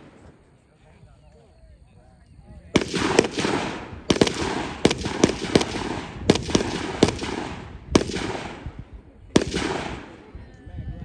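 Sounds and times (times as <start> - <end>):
echoing gunshots: 2.7 - 10.4.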